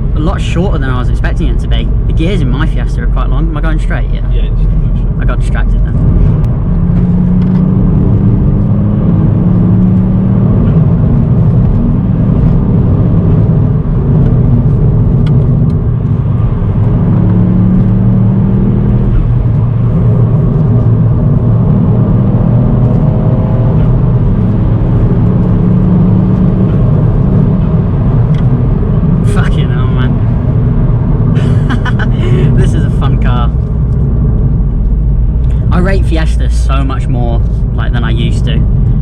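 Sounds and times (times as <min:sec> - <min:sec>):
car engine accelerating: 0:00.0 - 0:39.0
road noise: 0:00.0 - 0:39.0.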